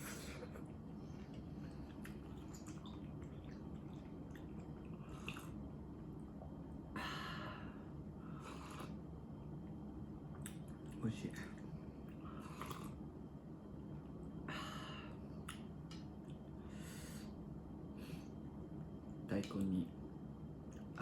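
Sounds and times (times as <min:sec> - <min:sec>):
soft chewing: 0:00.0 - 0:06.8, 0:08.4 - 0:13.0, 0:20.6 - 0:21.0.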